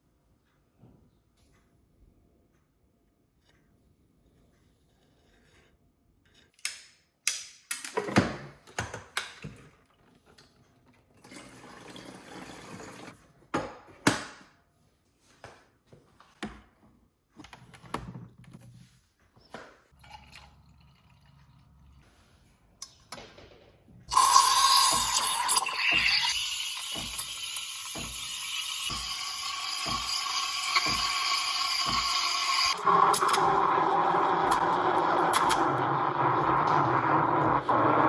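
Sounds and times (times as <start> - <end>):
water being poured: 11.2 - 13.2, 20.0 - 22.3, 24.1 - 38.0.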